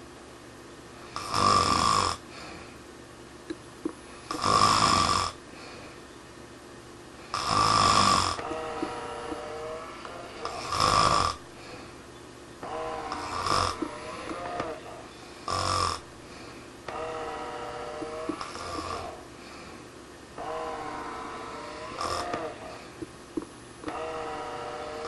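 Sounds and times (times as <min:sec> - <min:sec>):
person snoring loudly: 0:01.1 - 0:02.5, 0:04.3 - 0:05.4, 0:07.3 - 0:11.8, 0:12.6 - 0:19.7, 0:20.4 - 0:23.0, 0:23.9 - 0:25.0
wavering breath sounds: 0:08.4 - 0:23.2.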